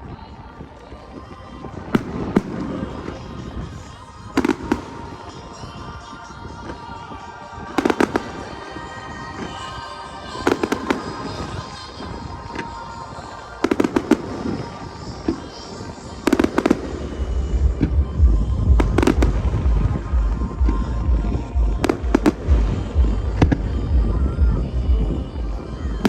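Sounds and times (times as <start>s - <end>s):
music: 0.0s - 26.0s
fireworks bangs: 1.3s - 23.8s
low rumble: 17.0s - 26.0s.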